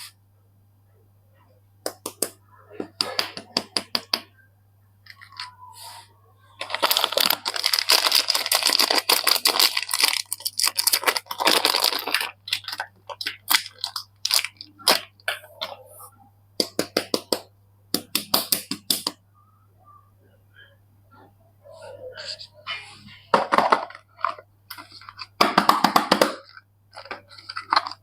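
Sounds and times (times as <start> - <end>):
packaging tearing and rustling: 6.6 - 15.1, 26.9 - 28.0
packaging crackling: 6.6 - 15.2, 26.4 - 28.0.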